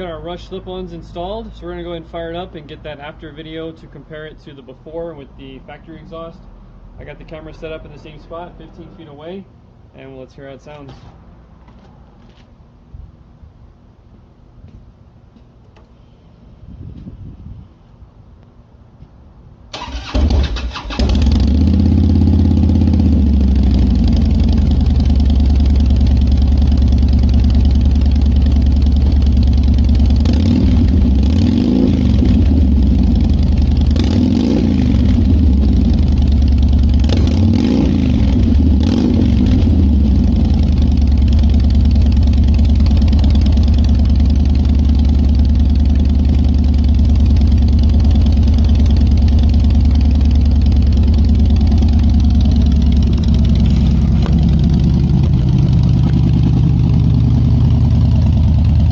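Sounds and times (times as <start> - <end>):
motorcycle starter cranking: 19.7 - 21.5
motorcycle engine idling: 19.8 - 58.9
motorcycle throttle blips: 19.8 - 58.9.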